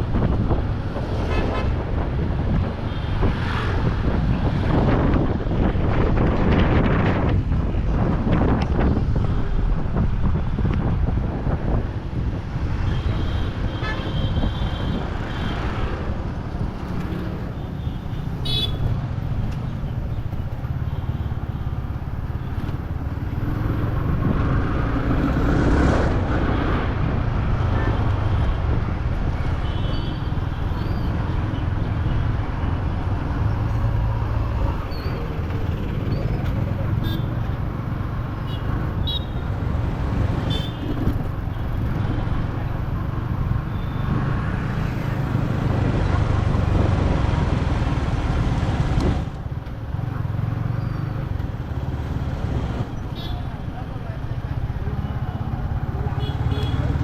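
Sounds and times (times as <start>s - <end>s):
vehicle horns tooting: 18.4s - 18.9s.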